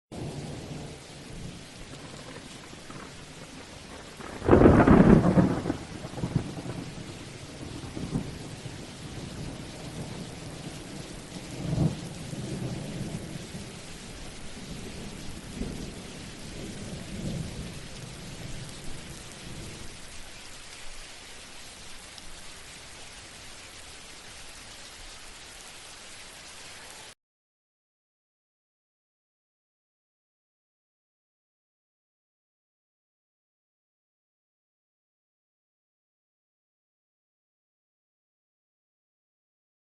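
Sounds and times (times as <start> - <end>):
steady rain: 0.1 - 27.2
rumbling thunder: 0.2 - 20.0.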